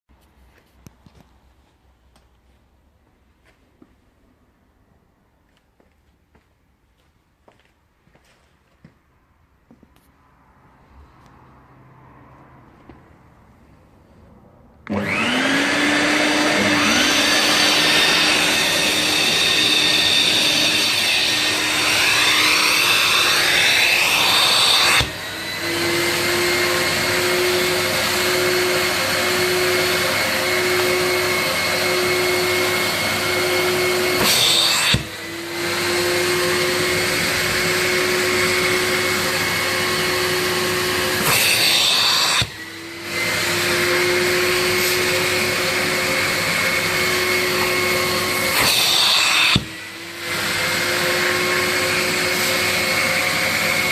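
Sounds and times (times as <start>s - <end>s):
vacuum cleaner motor hum: 14.8s - 53.9s.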